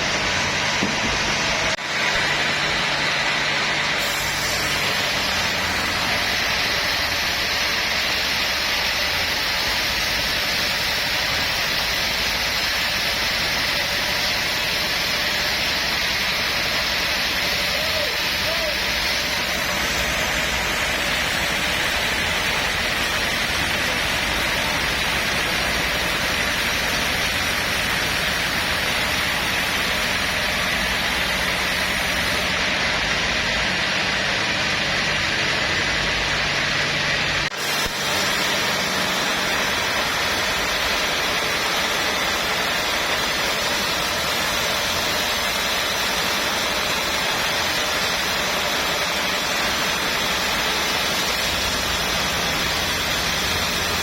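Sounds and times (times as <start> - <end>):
sawmill machinery running: 0.0 - 54.0.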